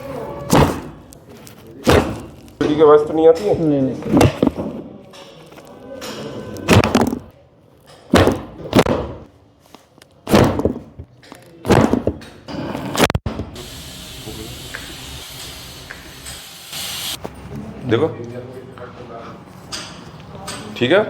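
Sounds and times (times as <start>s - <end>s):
steady hiss: 13.6s - 17.2s.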